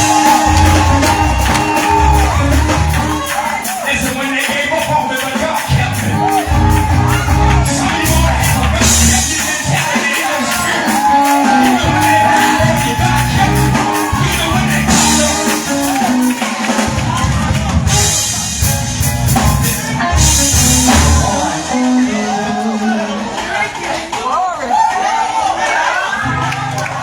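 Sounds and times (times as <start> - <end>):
bass line: 0.0 - 3.5, 5.7 - 22.6
voices singing: 0.0 - 18.6, 19.6 - 27.0
drum kit with cymbals: 0.0 - 22.6.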